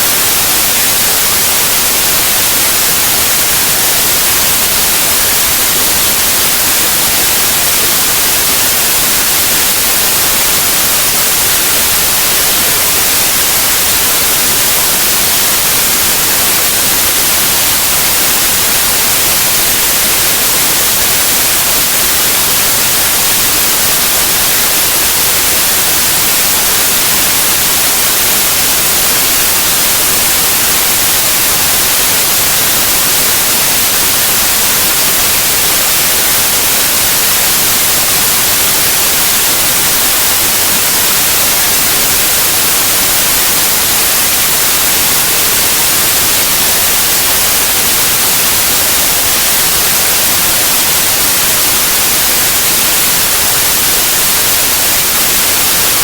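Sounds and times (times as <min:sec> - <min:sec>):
white noise hiss: 0:00.0 - 0:56.0.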